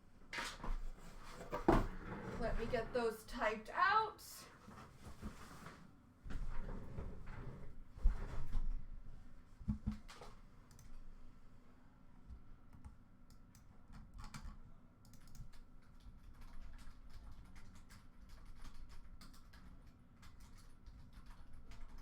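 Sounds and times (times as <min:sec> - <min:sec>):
typing on computer keyboard: 0:12.8 - 0:22.0.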